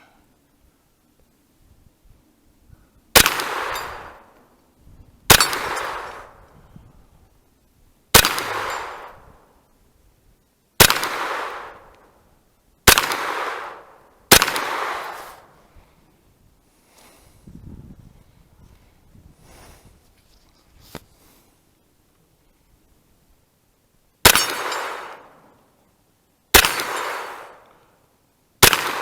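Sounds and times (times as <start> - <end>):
carbine gunshots with echo: 3.2 - 4.4, 5.3 - 6.5, 8.1 - 9.5, 10.8 - 12.1, 12.8 - 15.6, 24.2 - 25.5, 26.5 - 27.8, 28.6 - 29.0.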